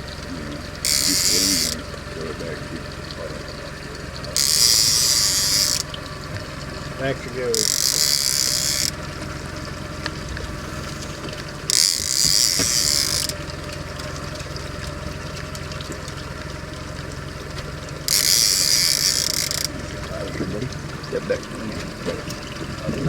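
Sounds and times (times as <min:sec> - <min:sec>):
fishing reel ratcheting: 0:00.0 - 0:21.3
boat motor humming: 0:00.0 - 0:23.0.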